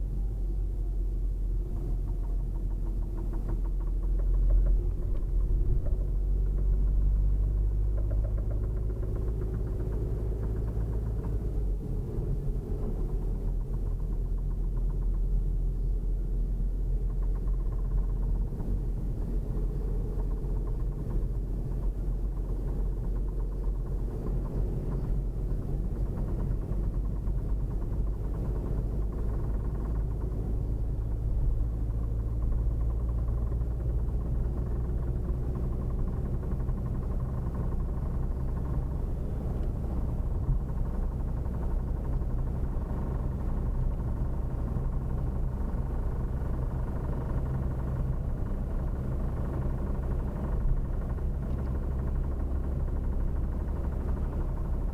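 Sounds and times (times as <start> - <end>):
engine humming: 0.0 - 54.9
rapid engine knocking: 1.3 - 54.9.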